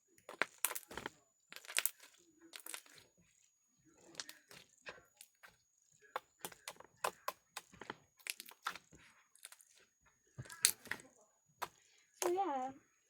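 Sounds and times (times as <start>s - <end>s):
slime clicking and popping: 6.2s - 9.6s.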